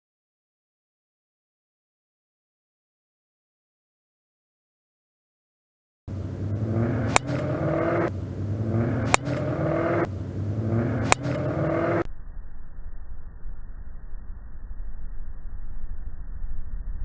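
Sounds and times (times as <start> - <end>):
dull muffled noise: 6.1 - 17.0
rising hum: 6.1 - 17.0
golf club striking ball: 6.7 - 12.0.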